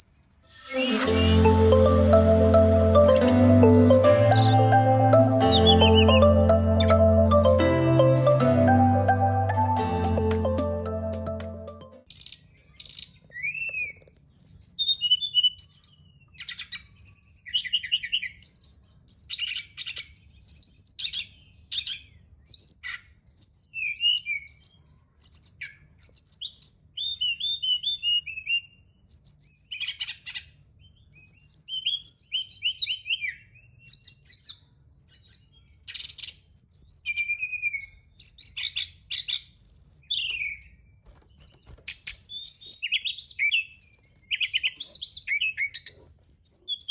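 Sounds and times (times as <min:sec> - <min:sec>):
bird chirping and trilling: 0:00.0 - 0:07.1, 0:31.1 - 0:46.9.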